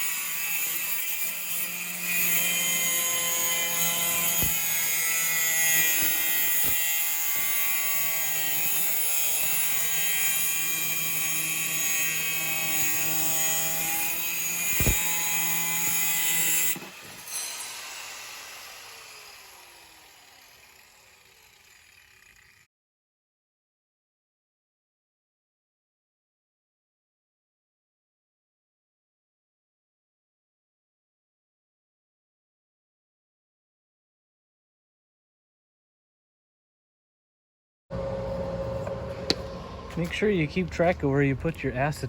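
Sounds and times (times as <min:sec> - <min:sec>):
power tool hissing on metal: 0:00.0 - 0:22.6
power tool winding down: 0:00.0 - 0:22.7.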